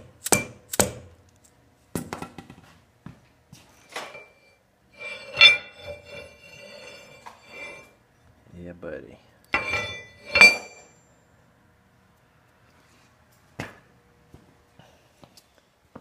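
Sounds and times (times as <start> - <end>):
metallic ringing and clatter: 3.8 - 7.9, 9.5 - 11.1.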